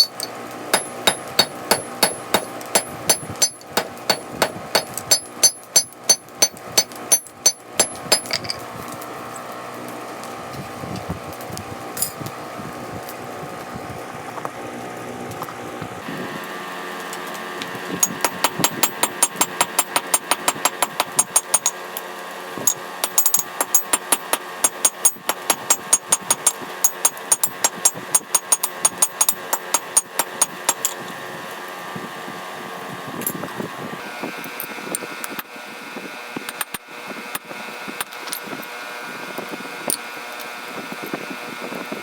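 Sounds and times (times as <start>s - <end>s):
hammer striking hot steel on anvil: 0.0s - 8.5s, 18.0s - 21.8s, 22.7s - 31.0s
mechanical hum: 0.0s - 42.0s.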